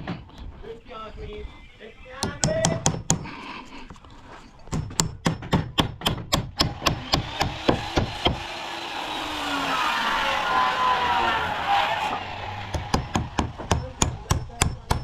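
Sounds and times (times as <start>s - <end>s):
hammer driving nails into timber: 4.7s - 8.5s, 12.7s - 15.0s
gliding tones: 7.6s - 14.0s
steady rushing sound: 7.8s - 14.2s.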